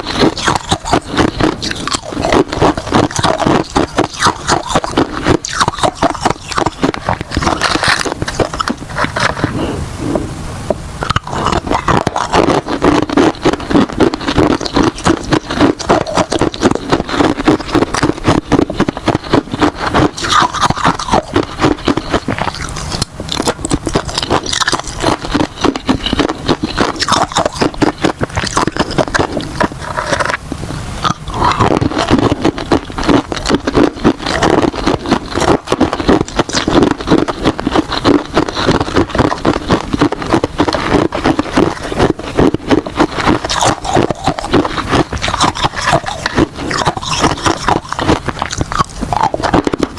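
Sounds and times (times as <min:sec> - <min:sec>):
ice crunching being chewed: 0:00.0 - 0:09.7, 0:11.0 - 0:49.9.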